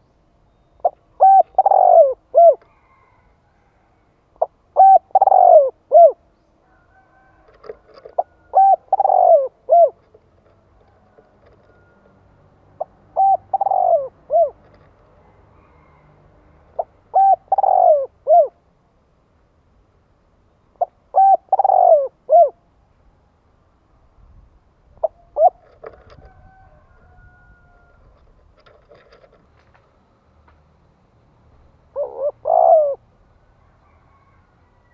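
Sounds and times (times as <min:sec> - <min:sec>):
dove cooing: 0:00.8 - 0:03.2, 0:04.4 - 0:06.3, 0:07.1 - 0:18.6, 0:20.8 - 0:22.6, 0:24.9 - 0:29.4, 0:31.9 - 0:33.1.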